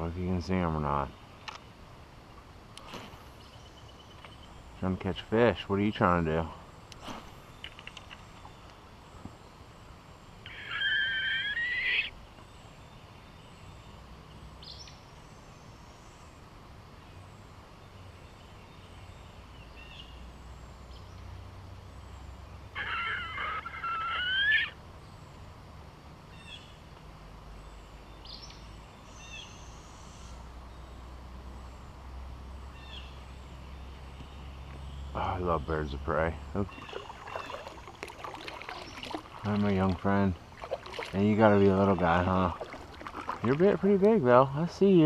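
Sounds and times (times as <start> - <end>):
faint short bird calls: 10.4 - 12.2, 22.7 - 24.8, 36.5 - 37.8
owl calling: 10.4 - 12.2, 22.7 - 24.8, 36.6 - 37.9.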